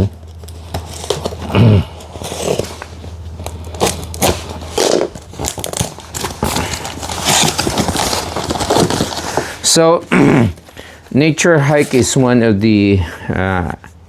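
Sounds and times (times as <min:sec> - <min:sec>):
packaging rustling and crackling: 0:00.0 - 0:12.2
cardboard box being opened: 0:00.2 - 0:09.8.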